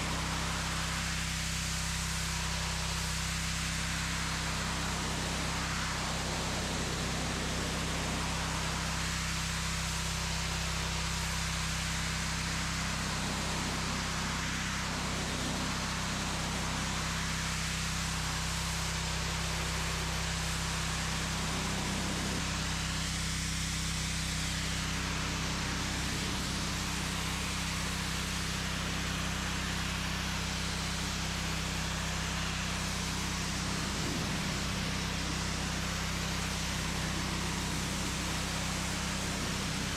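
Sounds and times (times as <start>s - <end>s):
pressure washer motor hum: 12.8s - 39.9s
water jet hissing: 25.2s - 39.9s.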